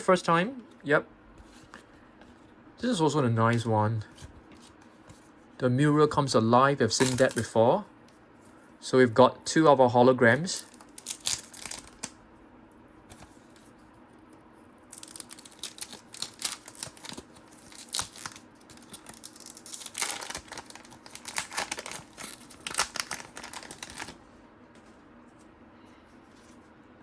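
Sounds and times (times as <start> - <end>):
wrapper being torn and crinkled: 10.5 - 12.2, 14.9 - 24.2.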